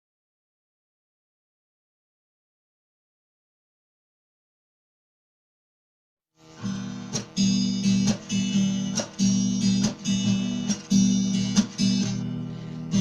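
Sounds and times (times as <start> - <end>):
guitar strumming chords: 6.4 - 13.0.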